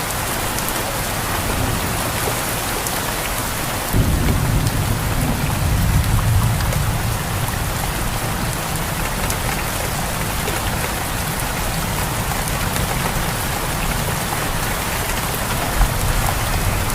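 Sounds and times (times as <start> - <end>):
heavy rain falling: 0.0 - 16.9
low thunder rumble: 3.9 - 10.4.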